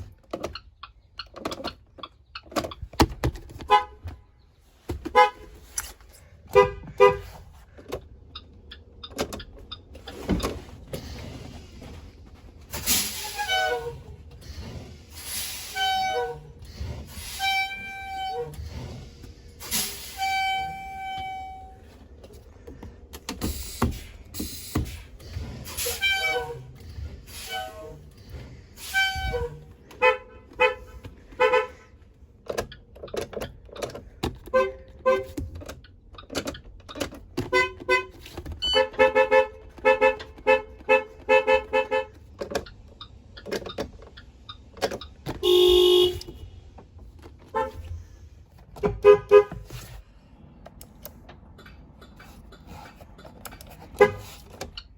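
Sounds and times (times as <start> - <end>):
bus horn blasts: 3.6 - 4.2, 5.0 - 5.6, 6.5 - 7.4, 12.8 - 14.2, 15.2 - 18.9, 19.6 - 22.0, 25.6 - 28.1, 28.7 - 32.0, 34.4 - 35.5, 37.4 - 42.3, 45.4 - 46.7, 47.5 - 47.9, 48.8 - 49.9, 53.9 - 54.4
short horn toots: 28.8 - 31.9, 45.4 - 46.5.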